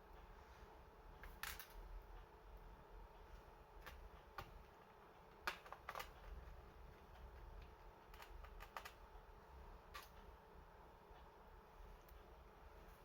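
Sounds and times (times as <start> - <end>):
faint low hum: 0.0 - 13.0
clicks and taps of laptop parts: 5.4 - 6.4, 7.6 - 9.0.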